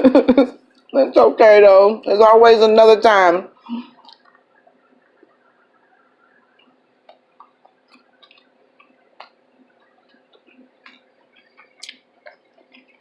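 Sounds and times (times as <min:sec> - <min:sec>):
mouth chewing wetly: 0:03.9 - 0:13.0.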